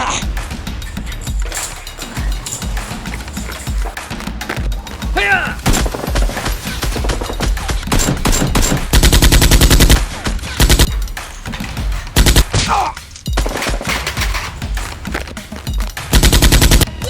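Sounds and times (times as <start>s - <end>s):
automatic gunfire bursts: 5.6s - 10.9s, 12.2s - 12.6s, 16.1s - 16.9s.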